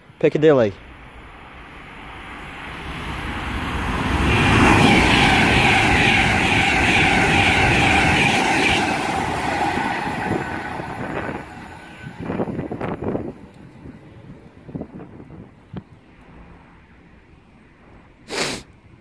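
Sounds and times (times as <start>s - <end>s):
electric train passing: 0.0s - 19.0s
high train whine: 0.0s - 19.0s.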